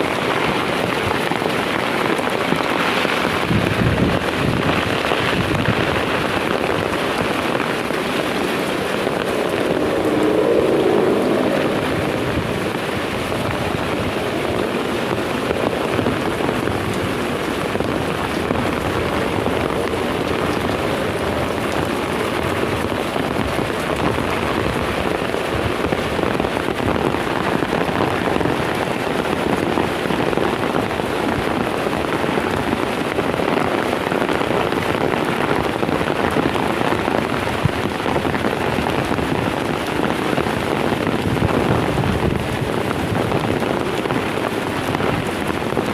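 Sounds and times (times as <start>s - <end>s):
heavy rain hissing: 0.0s - 45.9s.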